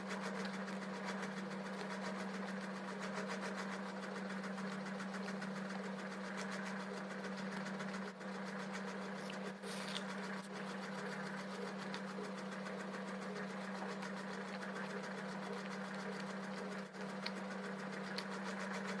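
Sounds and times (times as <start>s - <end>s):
machine hum with buzzing rattle: 0.0s - 19.0s
faint ticks: 8.9s - 19.0s.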